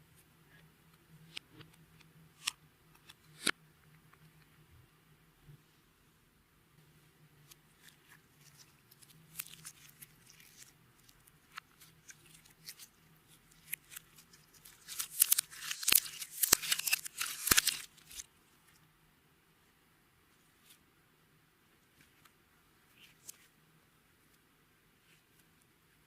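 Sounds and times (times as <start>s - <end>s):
slime crackling: 9.0s - 18.2s.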